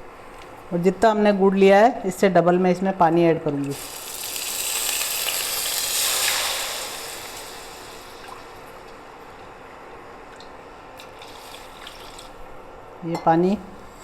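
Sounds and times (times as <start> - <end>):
water hissing in hot pan: 3.7 - 9.2.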